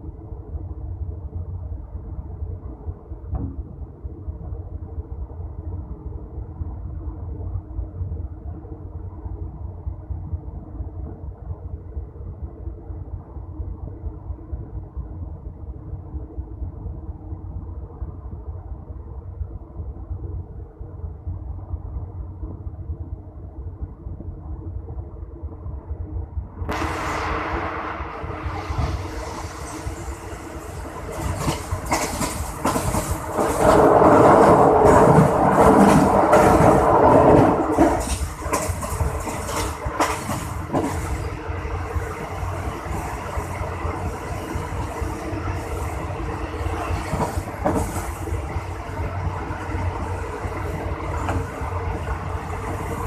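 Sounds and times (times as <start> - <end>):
train rumbling: 0.0 - 53.0
train wheels clicking over rails: 26.7 - 53.0.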